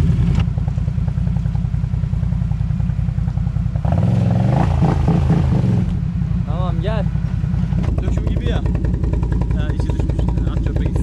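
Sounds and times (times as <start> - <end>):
atv engine running and revving: 0.0 - 11.0.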